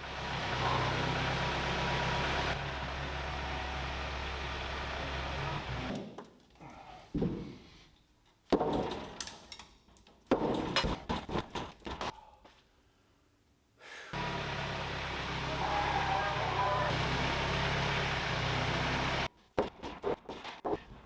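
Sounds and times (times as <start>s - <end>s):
knocks on heavy timber: 8.5s - 9.0s
steady machine noise: 14.2s - 19.3s.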